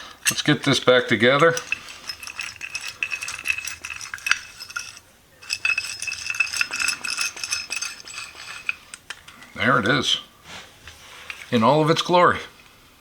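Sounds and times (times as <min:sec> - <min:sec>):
metal parts clinking and rattling: 0:00.0 - 0:09.8.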